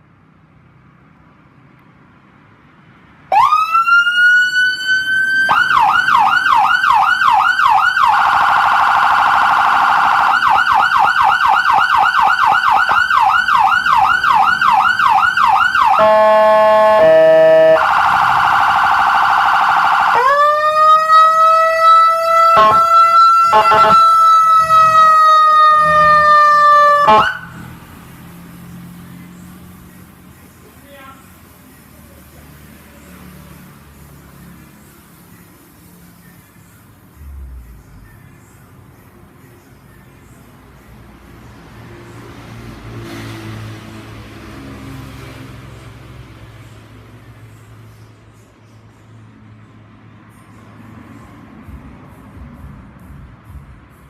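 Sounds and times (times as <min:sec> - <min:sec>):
electronic siren wailing and yelping: 0:03.3 - 0:27.6.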